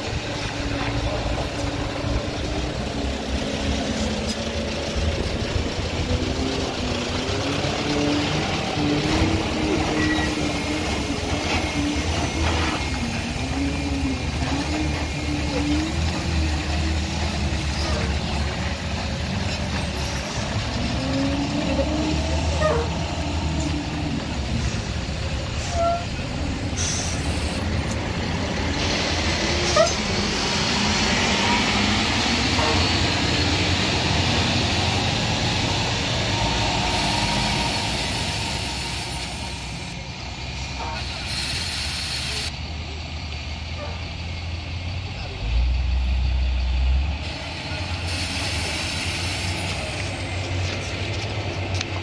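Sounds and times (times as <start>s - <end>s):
diesel truck engines rumbling: 0.0s - 52.0s
loud air hiss: 36.8s - 39.9s, 41.0s - 42.6s, 47.9s - 50.0s.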